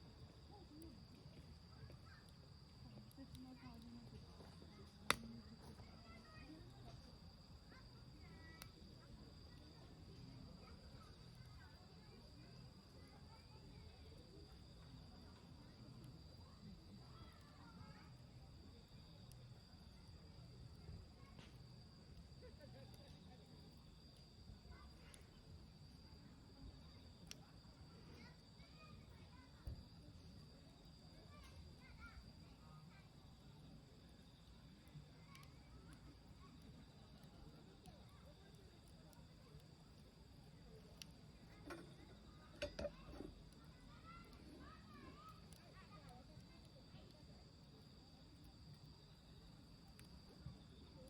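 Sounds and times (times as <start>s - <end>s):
insect drone: 0.0s - 51.0s
faint clicks: 4.8s - 5.4s.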